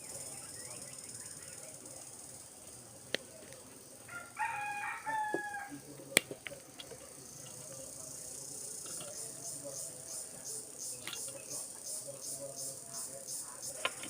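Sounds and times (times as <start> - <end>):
steady high hiss: 0.0 - 5.1, 5.7 - 14.0
rooster crowing: 4.1 - 5.8.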